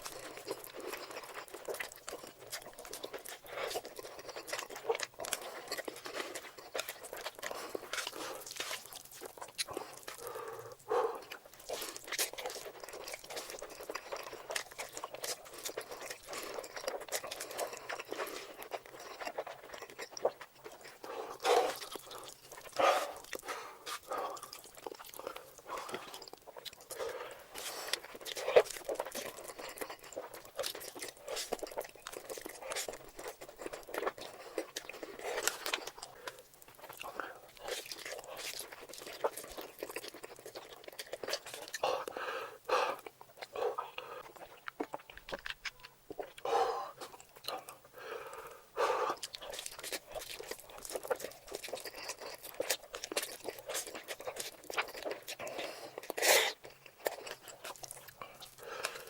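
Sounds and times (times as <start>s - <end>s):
person chewing noodles: 0.0s - 59.0s.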